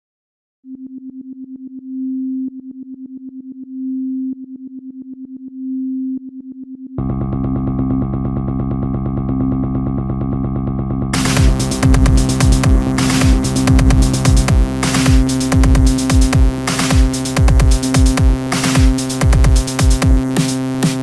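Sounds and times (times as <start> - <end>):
buzzing synthesizer pulses: 7.0 - 21.0
buzzy synth layer with bass: 7.0 - 21.0.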